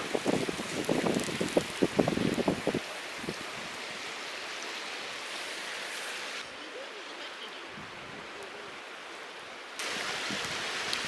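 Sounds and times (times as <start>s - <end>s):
mountain stream rushing: 0.0s - 11.0s.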